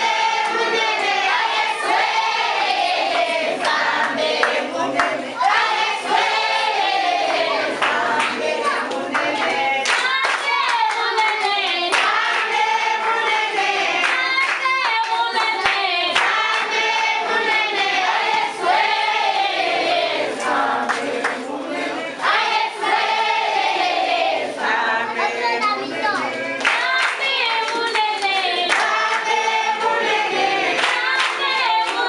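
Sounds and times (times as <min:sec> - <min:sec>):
group singing: 0:00.0 - 0:32.0
hand clapping: 0:03.0 - 0:05.7, 0:07.3 - 0:13.4, 0:14.0 - 0:16.8, 0:20.4 - 0:21.4, 0:26.1 - 0:29.4, 0:30.7 - 0:32.0.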